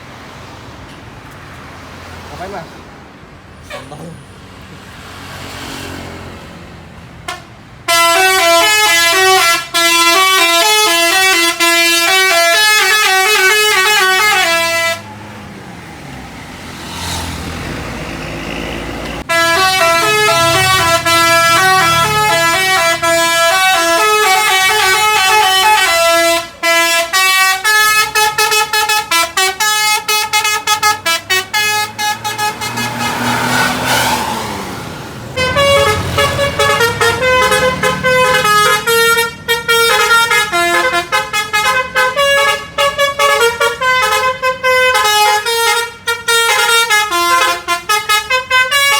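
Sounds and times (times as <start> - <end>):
bus engine rumbling: 0.0 - 48.9
multi-tone bus horn melody: 7.2 - 15.2, 17.9 - 34.2, 35.3 - 48.9.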